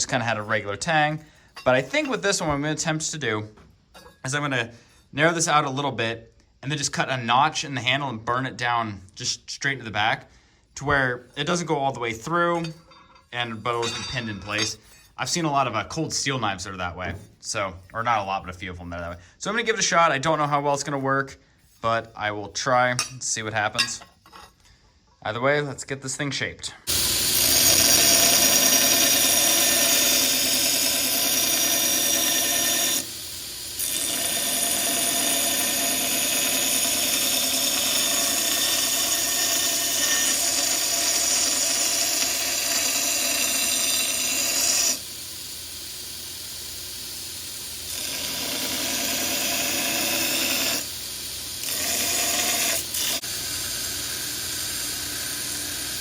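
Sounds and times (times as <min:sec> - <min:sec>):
power grinder grinding steel: 0:26.9 - 0:45.1, 0:47.7 - 0:56.0.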